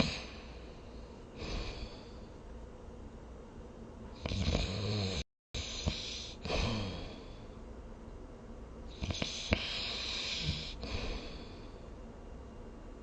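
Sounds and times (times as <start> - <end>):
person snoring: 0.0 - 0.6, 1.4 - 2.3, 4.2 - 7.6, 8.9 - 11.8
soft breath: 9.0 - 12.0.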